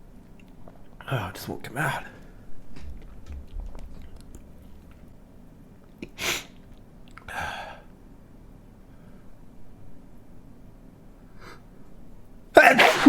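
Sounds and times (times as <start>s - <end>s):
man sneezing: 12.6s - 13.0s.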